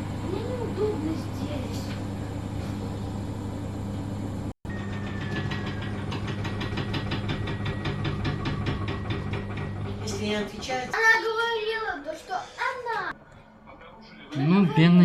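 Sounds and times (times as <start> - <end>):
washing machine motor humming: 0.0 - 11.0
fast even knocking: 4.7 - 10.9.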